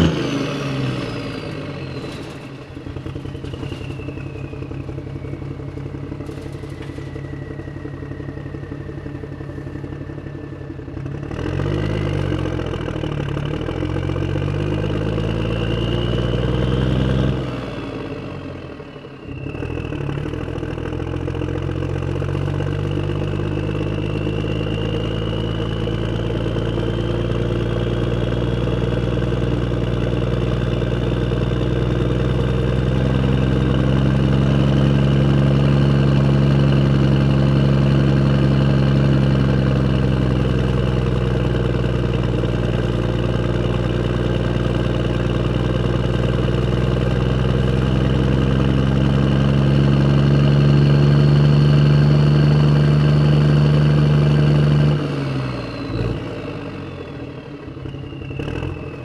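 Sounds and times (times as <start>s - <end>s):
tractor engine running: 0.0s - 59.0s
faint high whine: 1.8s - 11.3s.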